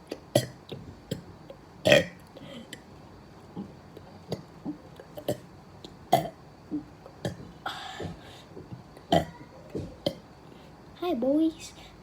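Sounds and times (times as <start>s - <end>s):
man burping: 1.8s - 2.7s, 6.1s - 7.4s
breathy hiss: 7.6s - 8.6s.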